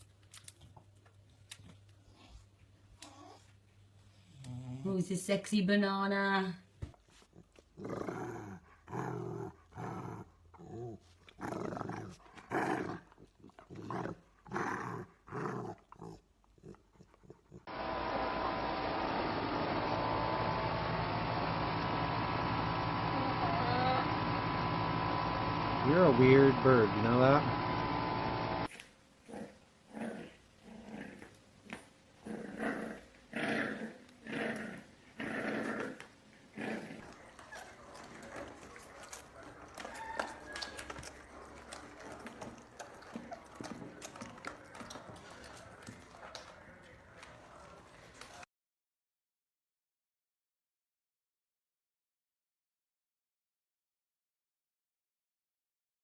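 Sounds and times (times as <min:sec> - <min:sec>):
dog growling: 0:07.3 - 0:17.7, 0:29.2 - 0:46.6.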